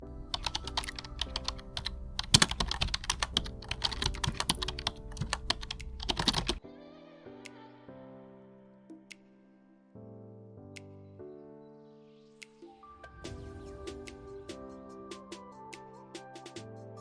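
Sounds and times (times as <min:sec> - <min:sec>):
soft background music: 0:00.0 - 0:17.0
rapid irregular clicking: 0:00.3 - 0:06.6.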